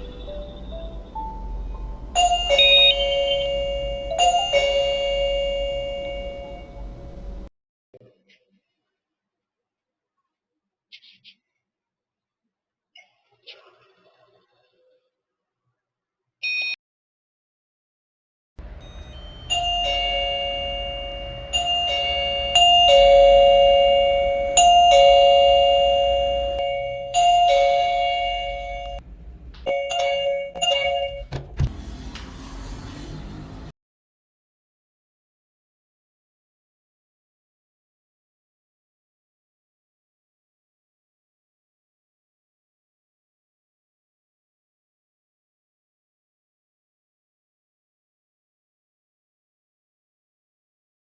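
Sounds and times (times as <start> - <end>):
doorbell ding-dong chime: 0.0 - 7.5, 18.6 - 29.0, 29.7 - 31.4.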